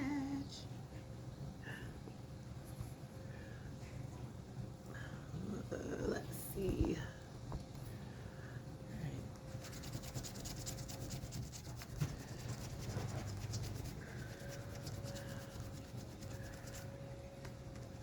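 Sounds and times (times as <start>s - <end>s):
scratching a scratch-off ticket: 9.5s - 17.0s.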